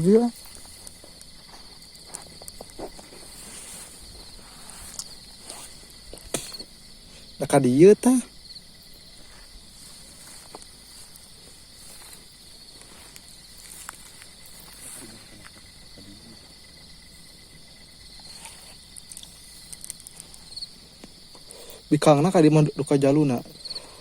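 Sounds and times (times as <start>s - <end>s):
crickets trilling: 0.0s - 24.0s
faint clicks and rustles: 0.3s - 7.3s, 9.2s - 15.7s, 18.2s - 21.8s.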